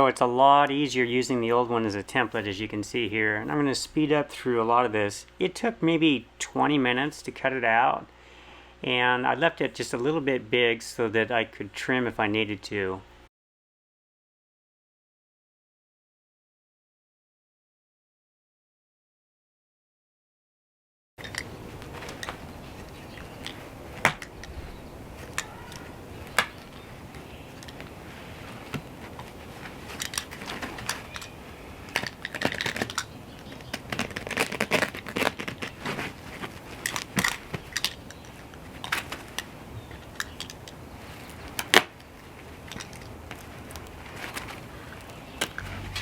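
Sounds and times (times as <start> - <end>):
carpet rustling and scraping: 26.3 - 31.3, 33.6 - 39.5.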